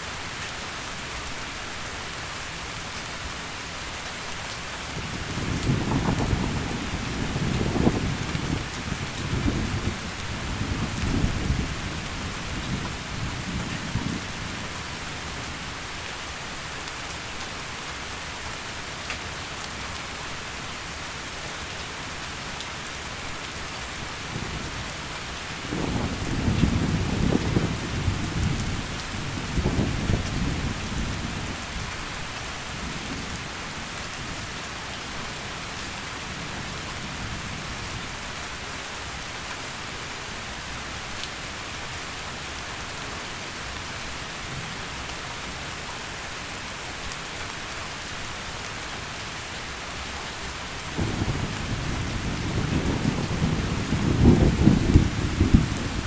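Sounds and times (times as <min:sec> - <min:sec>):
heavy rain: 0:00.0 - 0:56.0
thunder rolling: 0:05.6 - 0:08.6, 0:51.0 - 0:56.0.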